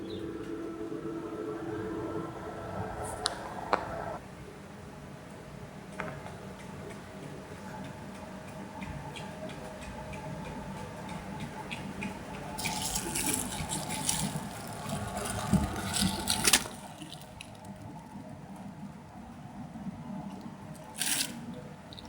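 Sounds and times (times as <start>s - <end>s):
low steady hum: 0.0s - 22.0s
liquid spraying and splashing: 12.6s - 18.0s, 20.9s - 21.4s.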